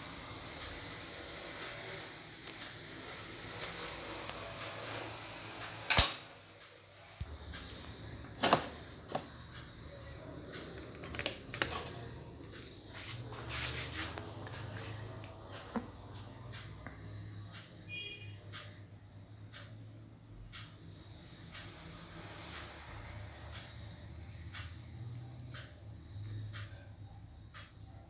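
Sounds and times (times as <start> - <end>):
toaster clicks and knocks: 5.9 - 6.3, 8.4 - 9.3.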